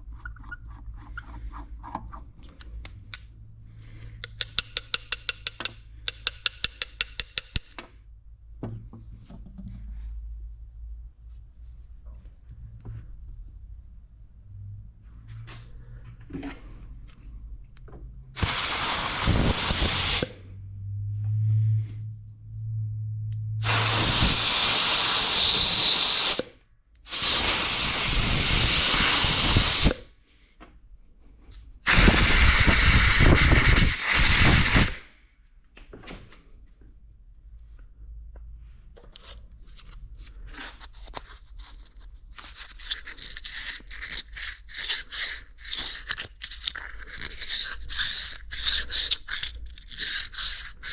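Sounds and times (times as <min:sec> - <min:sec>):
small parts clicking and scraping: 0:04.1 - 0:07.9, 0:39.0 - 0:50.9
hissing blasts of pressurized air: 0:18.4 - 0:20.4, 0:23.6 - 0:26.5, 0:27.1 - 0:30.1, 0:31.9 - 0:35.1.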